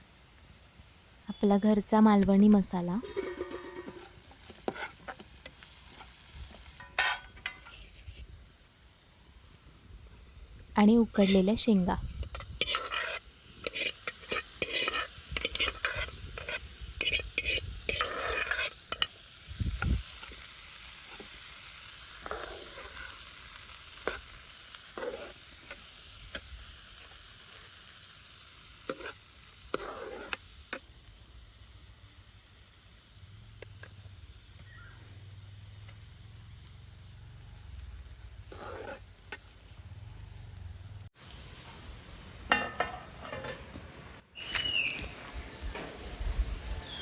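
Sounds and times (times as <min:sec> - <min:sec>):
food sizzling in a pan: 0:00.0 - 0:47.0
spoon scraping and knocking pan: 0:03.0 - 0:06.1, 0:06.8 - 0:08.2, 0:11.2 - 0:11.6, 0:12.2 - 0:19.2, 0:28.9 - 0:30.4, 0:42.5 - 0:43.8.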